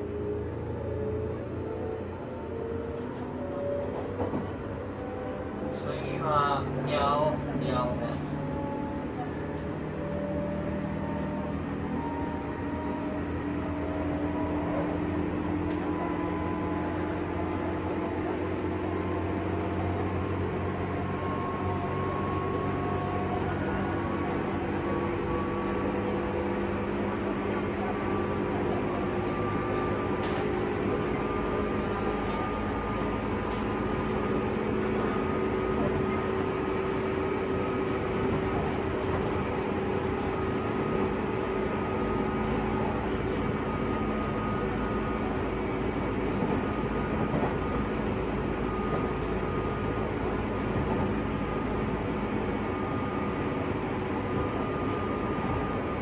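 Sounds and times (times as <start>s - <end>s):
train motor hum and whine: 0.0s - 56.0s
train wheels rumbling on rail: 0.0s - 56.0s.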